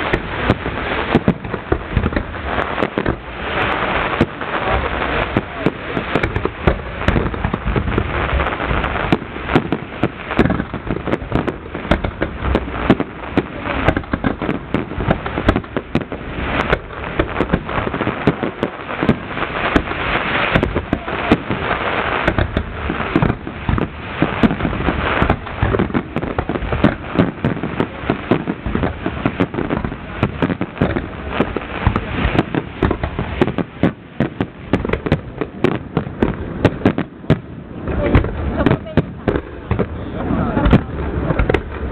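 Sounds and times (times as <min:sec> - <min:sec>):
fireworks bangs and crackles: 0:00.0 - 0:41.9.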